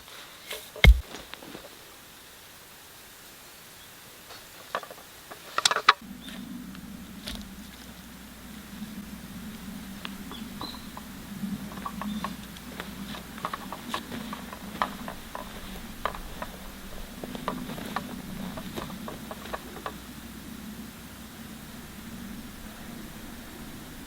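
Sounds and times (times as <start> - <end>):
low steady hum: 0.5 - 1.0, 6.0 - 24.0.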